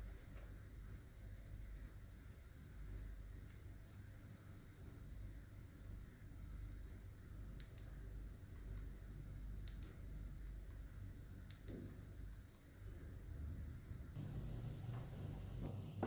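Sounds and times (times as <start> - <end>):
low steady hum: 0.0 - 16.0
faint sharp clicks: 7.6 - 7.9, 9.6 - 10.8, 11.5 - 12.7.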